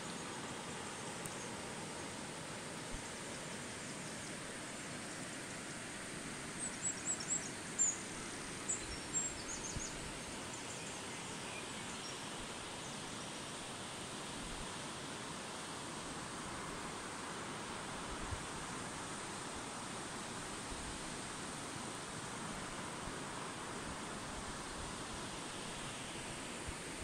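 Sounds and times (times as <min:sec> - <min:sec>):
river water rushing: 0:12.4 - 0:27.0.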